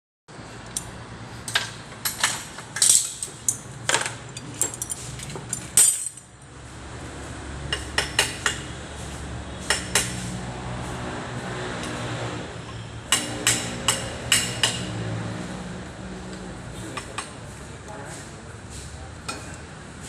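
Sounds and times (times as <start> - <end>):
metal objects clinking: 2.2 - 6.3.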